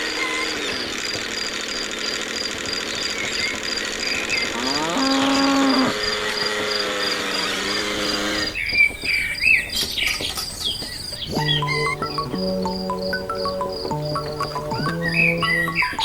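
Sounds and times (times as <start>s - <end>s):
birds chirping: 2.5s - 16.0s
low animal call: 4.4s - 8.6s, 11.3s - 16.0s
cow mooing: 4.6s - 6.1s
pulsing insect-like chirp: 10.6s - 16.0s.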